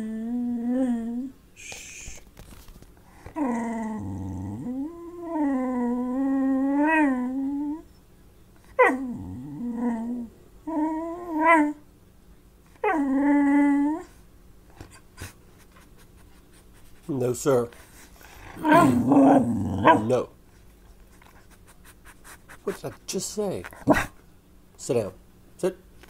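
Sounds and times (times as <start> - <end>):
dog growling: 0.0 - 1.4, 3.1 - 7.8, 8.8 - 11.8, 12.8 - 14.1, 18.2 - 20.3, 22.6 - 24.2
dog whine-howling: 0.0 - 1.4, 3.2 - 7.9, 8.7 - 11.8, 12.7 - 14.2, 18.3 - 20.2
dog yelping: 8.8 - 9.2, 18.5 - 20.2.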